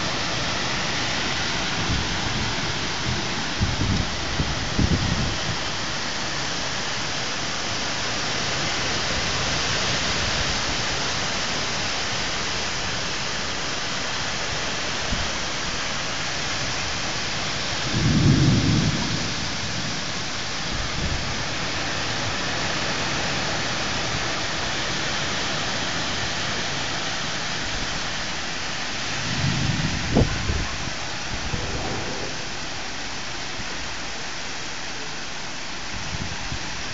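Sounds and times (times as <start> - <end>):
heavy rain falling: 0.0 - 36.9.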